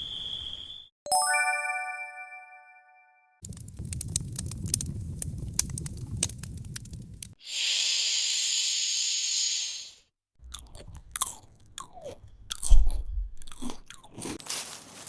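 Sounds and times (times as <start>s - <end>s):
crunching and crackling: 3.4s - 7.4s, 10.4s - 15.0s
high hiss: 7.4s - 10.0s.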